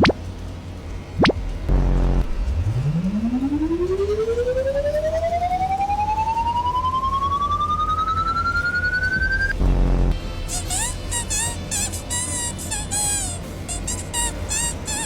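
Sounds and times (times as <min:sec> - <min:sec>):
low rumble: 0:00.1 - 0:14.3
pulsing tone sliding upward: 0:01.2 - 0:12.3.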